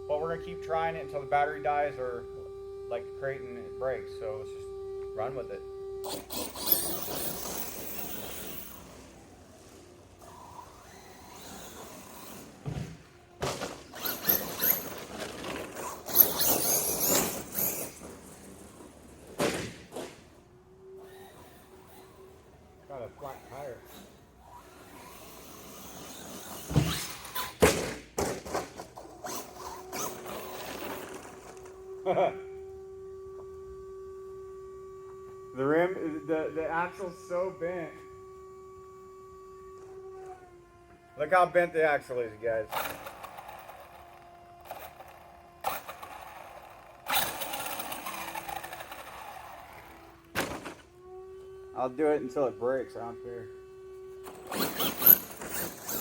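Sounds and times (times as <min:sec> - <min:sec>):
faint steady whine: 0:00.0 - 0:27.6, 0:28.2 - 0:56.0
electric motor whirring: 0:00.0 - 0:27.7, 0:28.3 - 0:56.0
rc truck running: 0:00.0 - 0:56.0
steady hum: 0:00.0 - 0:56.0
rc truck landing thuds: 0:06.0 - 0:20.4, 0:23.9 - 0:31.8, 0:42.7 - 0:51.0, 0:54.2 - 0:56.0.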